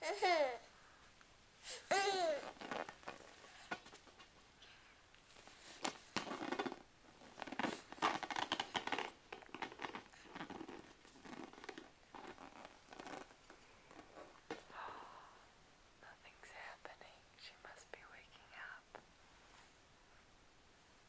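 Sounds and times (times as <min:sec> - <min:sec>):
rustling and crinkling: 0:00.2 - 0:14.8.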